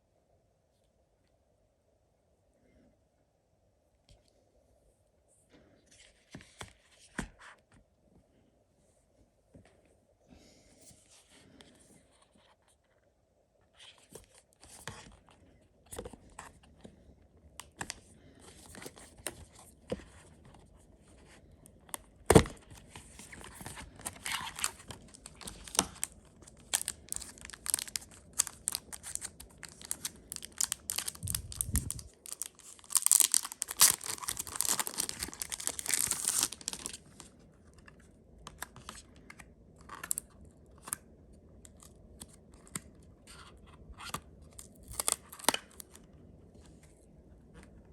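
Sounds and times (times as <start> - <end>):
packaging tearing and crinkling: 23.2 - 37.3, 44.6 - 45.8.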